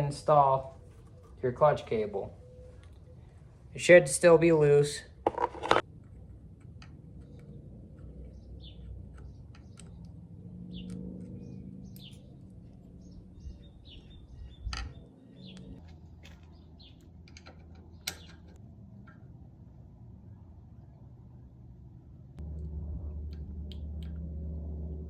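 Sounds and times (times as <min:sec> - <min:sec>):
low steady rumble: 0:05.2 - 0:25.0
small birds chirping: 0:07.0 - 0:18.6
sharp clicks and knocks: 0:16.2 - 0:19.2.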